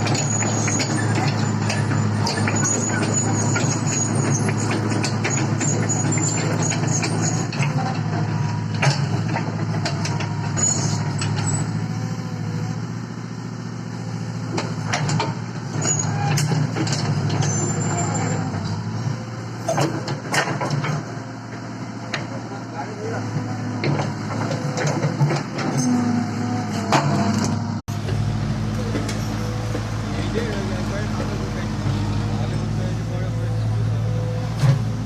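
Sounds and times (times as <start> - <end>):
metal clanks and knocks: 0.0 - 11.7, 14.5 - 18.8, 19.6 - 22.4, 23.4 - 28.2
diesel engine running: 0.0 - 35.0.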